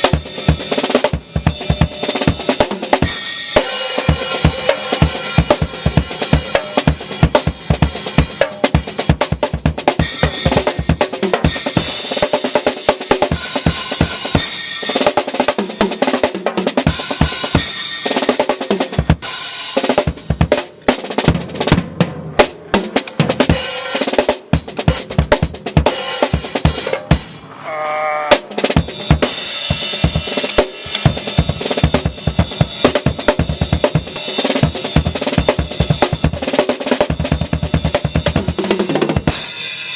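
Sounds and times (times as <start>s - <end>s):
cymbals: 0.0s - 9.1s, 13.2s - 16.2s, 16.8s - 20.6s, 21.2s - 25.0s, 39.2s - 39.9s.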